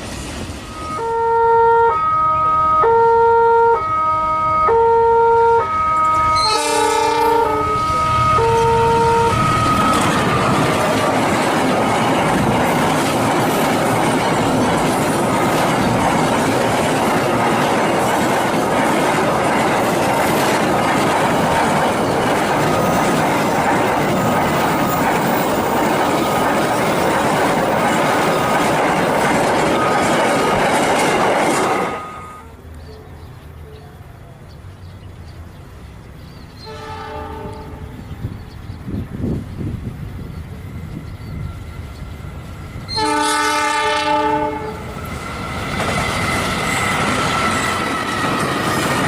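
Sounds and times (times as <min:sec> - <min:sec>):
train wheels on rail: 0:00.0 - 0:01.3, 0:05.6 - 0:49.0
train horn blast: 0:00.6 - 0:11.0, 0:31.8 - 0:32.6, 0:36.6 - 0:38.1, 0:42.9 - 0:44.9.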